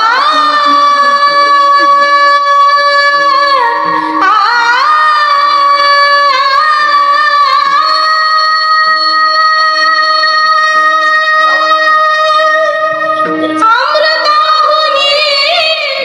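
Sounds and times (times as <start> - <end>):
woman singing devotional song: 0.0 - 16.0.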